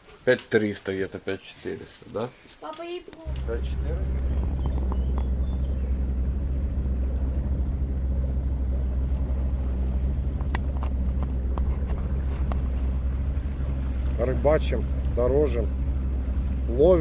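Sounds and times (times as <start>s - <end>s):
water and wind noise: 0.0s - 17.0s
faint clicks: 2.2s - 14.2s
outboard motor droning: 3.2s - 17.0s.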